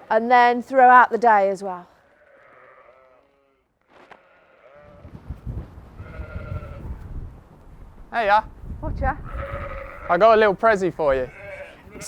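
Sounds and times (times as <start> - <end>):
sheep bleating: 2.0 - 5.1, 6.0 - 7.0, 9.2 - 10.4, 11.2 - 12.0
low rumble of wind: 4.7 - 12.0.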